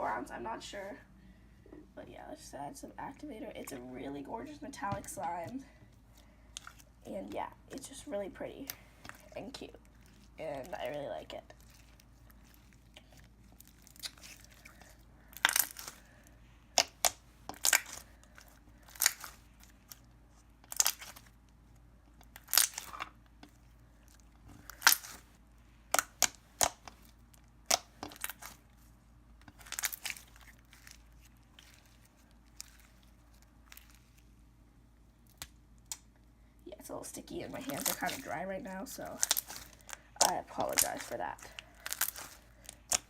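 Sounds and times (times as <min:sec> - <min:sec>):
clicky slime clicking and popping: 0:16.8 - 0:17.9.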